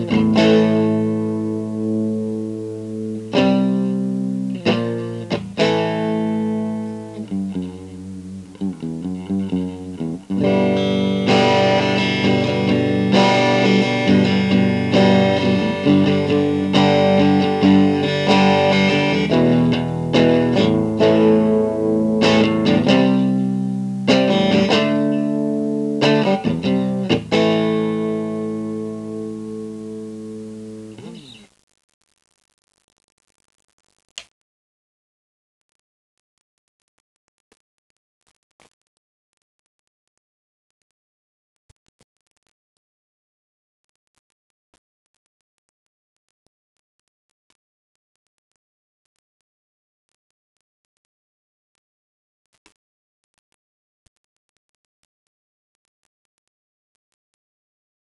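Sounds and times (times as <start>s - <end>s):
electric guitar through amplifier: 0.0s - 31.5s.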